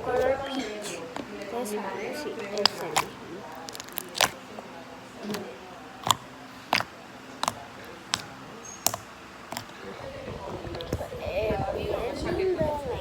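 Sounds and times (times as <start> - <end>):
slime popping clicks: 2.6 - 4.4, 5.3 - 9.7.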